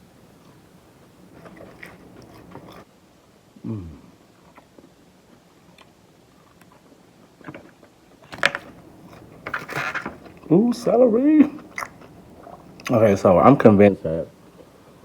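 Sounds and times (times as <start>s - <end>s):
quiet chewing: 0.0s - 2.9s, 3.6s - 10.8s, 11.4s - 13.2s
crunchy celery bite: 1.3s - 2.8s, 11.6s - 13.0s
person humming: 3.6s - 4.1s.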